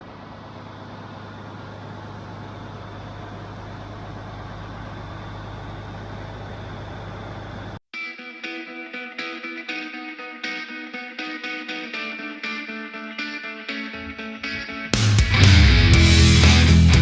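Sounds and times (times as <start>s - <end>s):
farm machine engine running: 0.0s - 7.8s, 14.0s - 17.0s
rock music with electric guitar: 7.9s - 17.0s.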